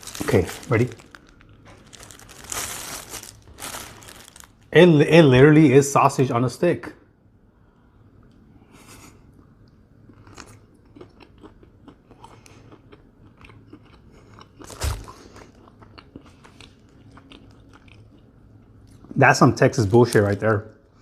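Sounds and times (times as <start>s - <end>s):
chewing and biting food: 10.1s - 19.1s.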